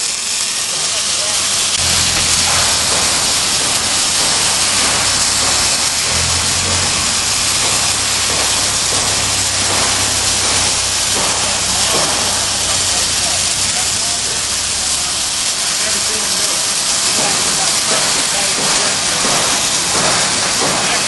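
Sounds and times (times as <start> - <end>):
welding arc hissing and crackling: 0.0 - 21.0.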